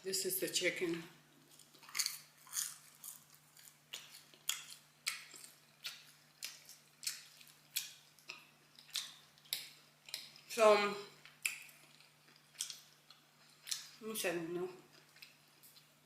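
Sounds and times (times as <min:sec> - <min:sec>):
crunchy chewing of fried chicken: 0:01.4 - 0:10.5, 0:11.1 - 0:14.0, 0:14.8 - 0:16.0.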